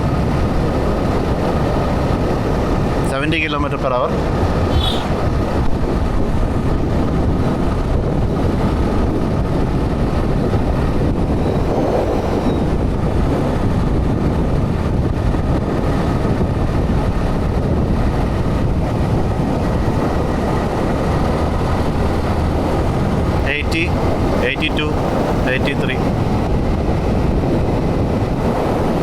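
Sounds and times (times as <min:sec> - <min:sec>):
wind rush: 0:00.0 - 0:29.0
motorcycle engine cruising: 0:04.2 - 0:25.4.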